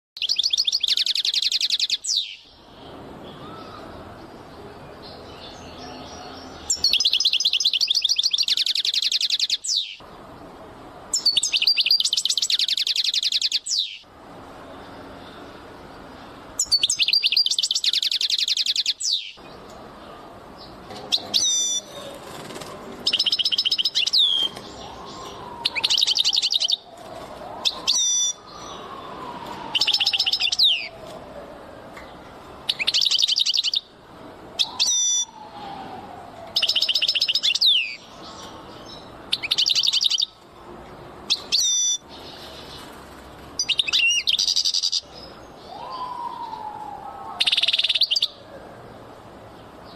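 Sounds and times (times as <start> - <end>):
songbird trilling: 0.2 - 2.5, 5.3 - 10.0, 11.1 - 14.0, 16.6 - 19.4, 21.1 - 22.1, 23.0 - 26.9, 27.6 - 28.9, 29.8 - 31.0, 32.7 - 33.9, 34.6 - 35.4, 36.6 - 40.4, 41.3 - 42.5, 43.6 - 46.7, 47.4 - 48.4.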